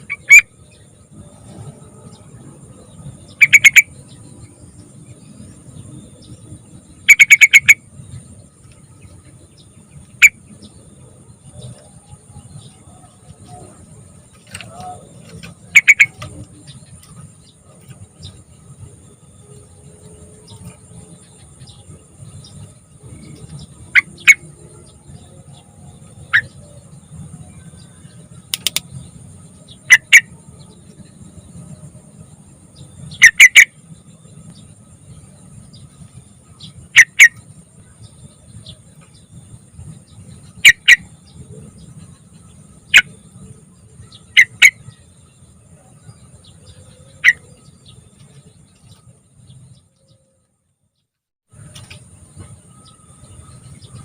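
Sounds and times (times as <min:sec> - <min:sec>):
bird giving sharp calls: 0:00.0 - 0:00.5, 0:03.4 - 0:03.9, 0:07.1 - 0:07.8, 0:14.5 - 0:16.5, 0:29.9 - 0:30.3, 0:33.2 - 0:33.7, 0:37.0 - 0:37.4, 0:40.6 - 0:41.1, 0:44.2 - 0:45.0.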